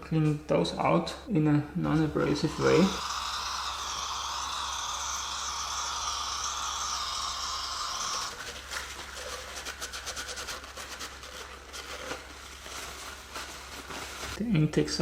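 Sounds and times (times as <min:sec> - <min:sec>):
aerosol can spraying: 0:02.4 - 0:10.7.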